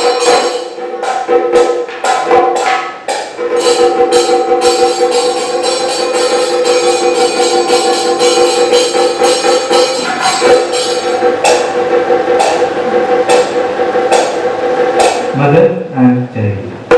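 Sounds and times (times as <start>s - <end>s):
metal percussion strokes: 0.0s - 15.7s
steady held drone: 3.7s - 15.7s.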